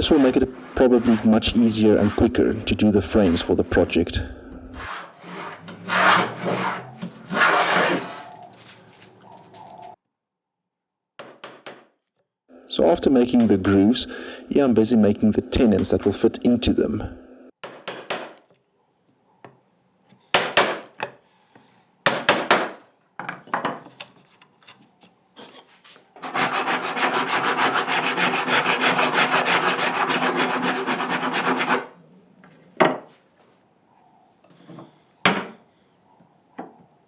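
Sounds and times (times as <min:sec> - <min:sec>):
hand tool scraping wood: 0:00.0 - 0:04.1, 0:04.7 - 0:08.8, 0:24.0 - 0:32.0.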